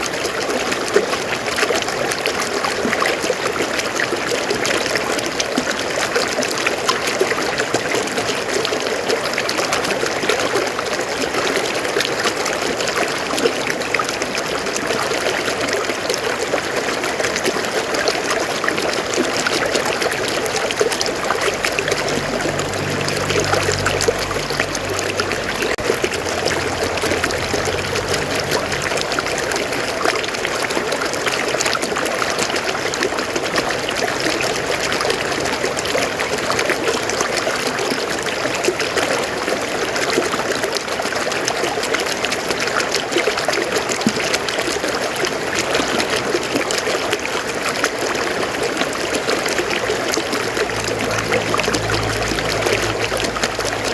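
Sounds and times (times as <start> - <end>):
river water flowing over rocks: 0.0 - 53.9
faint low hum: 20.0 - 30.7.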